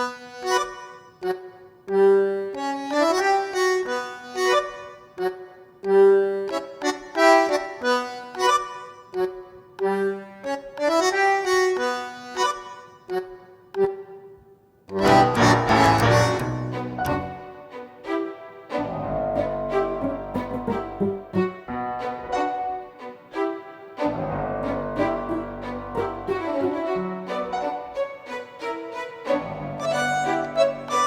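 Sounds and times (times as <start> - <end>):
simple background melody: 14.9 - 31.0.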